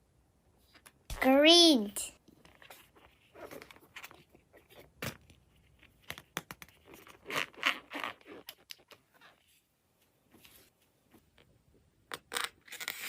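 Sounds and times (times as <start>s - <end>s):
rustling scraping and crinkling: 2.4s - 6.0s.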